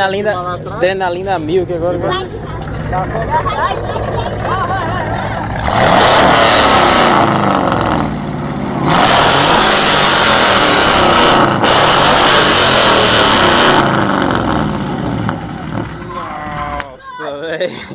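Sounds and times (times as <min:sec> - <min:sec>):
car engine accelerating hard: 0:02.7 - 0:16.6.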